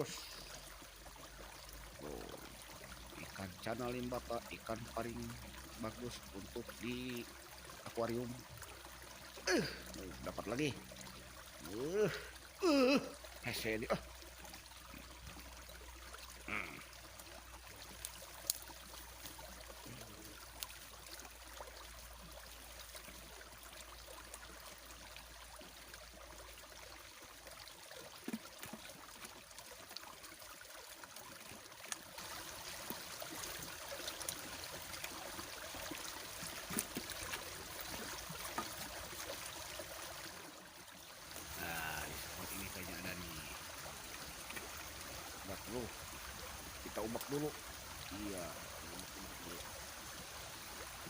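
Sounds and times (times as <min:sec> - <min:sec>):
small stream trickling: 0:00.0 - 0:51.0.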